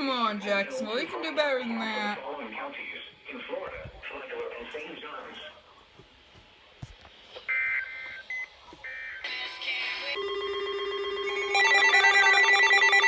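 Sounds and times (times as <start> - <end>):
electronic synthesizer music: 10.2 - 13.0.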